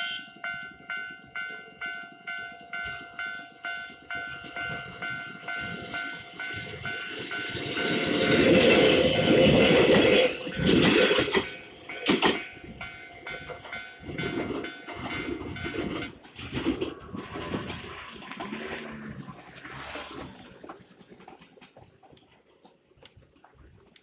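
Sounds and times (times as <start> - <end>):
level crossing bell clanging: 0.0 - 17.2
train wheels on rails: 0.0 - 23.2.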